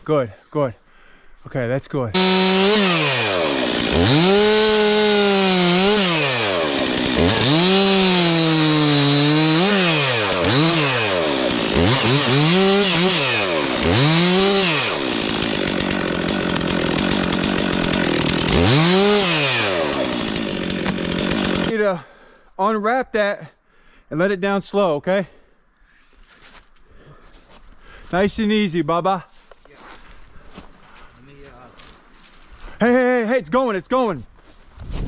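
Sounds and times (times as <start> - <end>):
chainsaw revving: 2.1 - 21.8.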